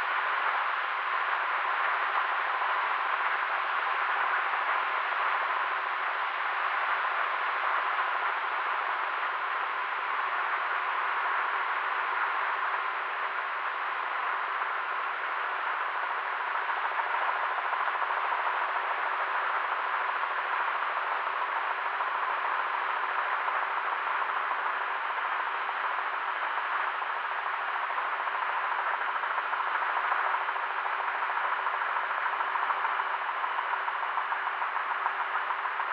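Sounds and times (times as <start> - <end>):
faint steady hum: 0.0 - 35.9.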